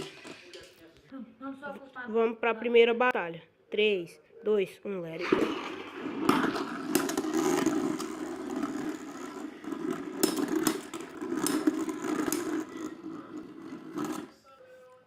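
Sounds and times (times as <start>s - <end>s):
spinning tops whirring and grinding: 0.0s - 0.6s, 5.2s - 14.3s
spinning tops clacking together: 6.2s - 14.3s.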